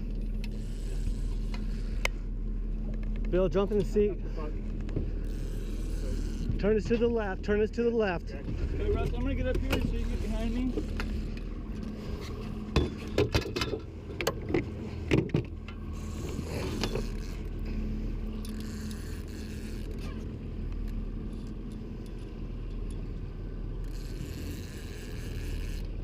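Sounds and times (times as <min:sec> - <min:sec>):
boat motor running: 0:00.0 - 0:26.0.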